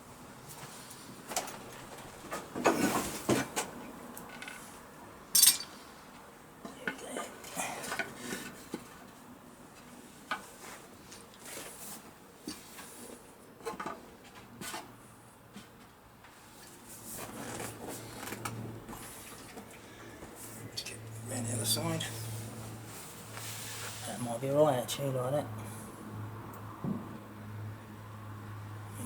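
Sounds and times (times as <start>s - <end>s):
metal tools clinking: 5.4s - 5.8s.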